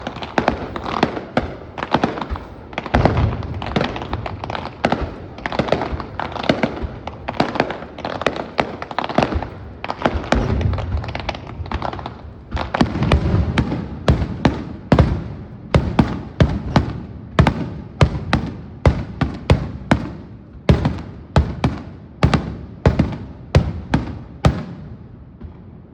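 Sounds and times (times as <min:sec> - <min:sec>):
firework shells booming: 0:00.0 - 0:25.7
firework bangs and crackles: 0:00.0 - 0:25.9.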